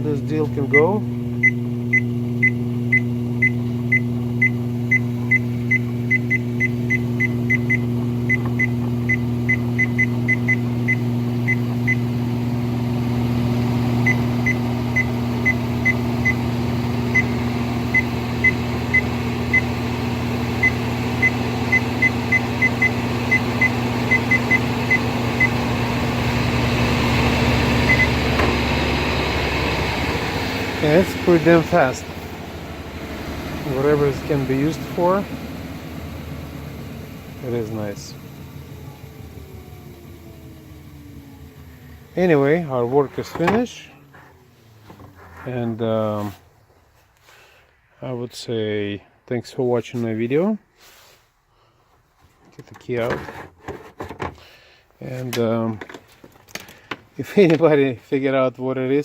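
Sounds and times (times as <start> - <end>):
treadmill motor humming: 0.0 - 45.3.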